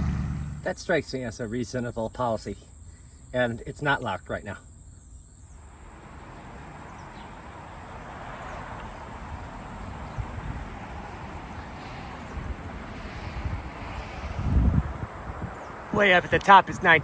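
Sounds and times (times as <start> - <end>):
high-pitched insect trill: 1.1 - 7.5
broad rushing noise: 9.3 - 17.0.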